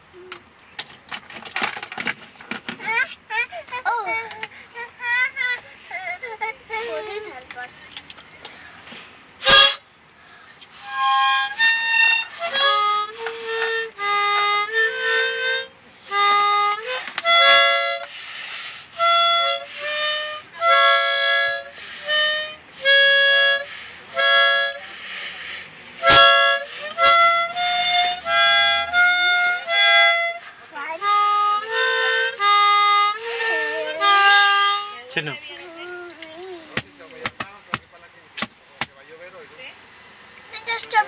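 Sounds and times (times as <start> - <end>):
reed instrument chords: 9.4 - 9.8, 10.8 - 18.2, 18.9 - 25.2, 26.0 - 35.0
breathy hiss: 17.9 - 19.0, 21.6 - 26.0.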